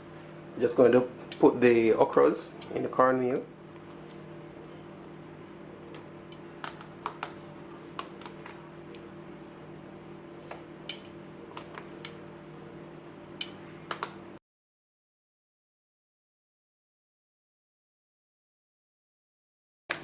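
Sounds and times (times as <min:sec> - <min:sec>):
steady low hum: 0:00.0 - 0:14.4.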